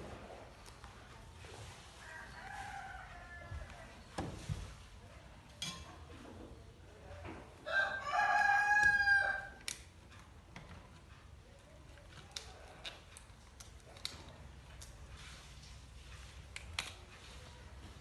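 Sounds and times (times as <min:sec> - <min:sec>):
rooster crowing: 0:02.1 - 0:03.6, 0:07.7 - 0:09.6.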